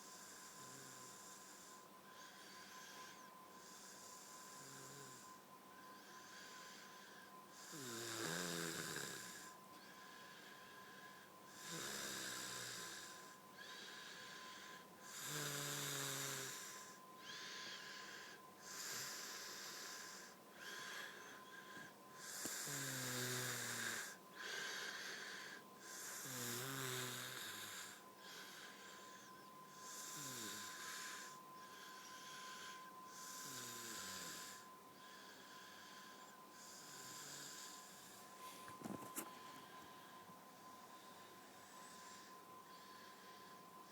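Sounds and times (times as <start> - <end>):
woman snoring: 0.0 - 5.3, 7.6 - 9.5, 11.5 - 38.2
quiet breaths: 0.0 - 43.9.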